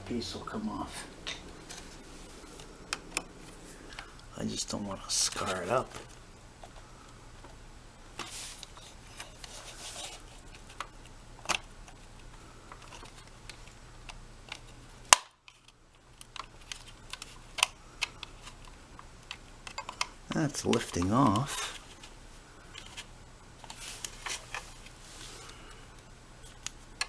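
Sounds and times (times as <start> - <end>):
faint low hum: 0.0 - 27.0.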